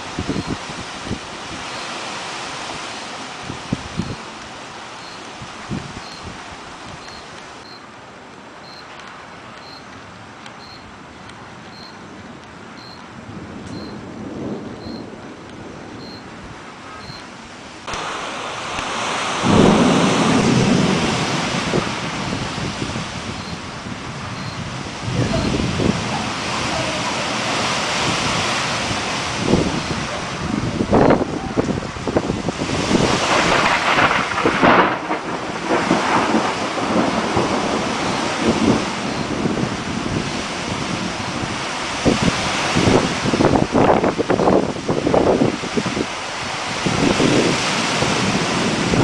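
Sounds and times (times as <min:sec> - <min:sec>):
gusting wind: 0:00.0 - 0:49.0
rain hiss: 0:00.0 - 0:49.0
thunder rumble: 0:13.1 - 0:49.0
thunder crack: 0:17.8 - 0:27.6, 0:30.6 - 0:40.2.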